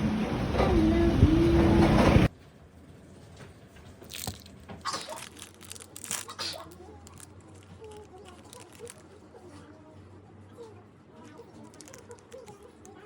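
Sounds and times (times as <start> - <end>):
loud steady rumble with hum: 0.0 - 2.3
crisp crunches and crackles: 4.0 - 9.6, 11.2 - 13.0.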